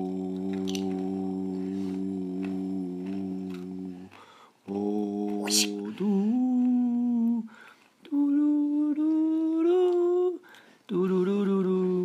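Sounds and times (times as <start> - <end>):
person humming held notes: 0.0 - 12.0.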